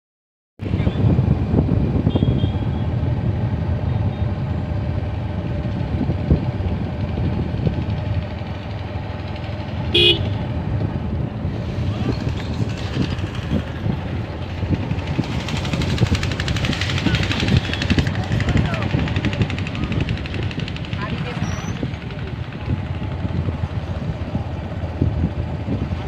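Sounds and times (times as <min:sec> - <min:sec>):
low rumble of traffic: 0:00.6 - 0:26.0
car horn toot: 0:02.1 - 0:02.9, 0:09.9 - 0:10.4.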